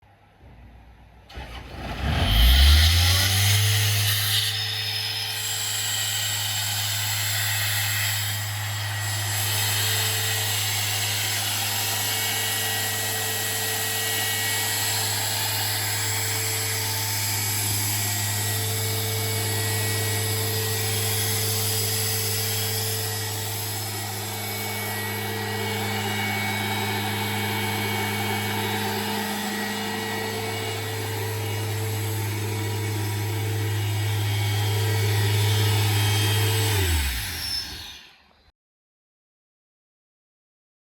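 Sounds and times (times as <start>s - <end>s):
diesel compressor engine running: 8.5s - 37.5s.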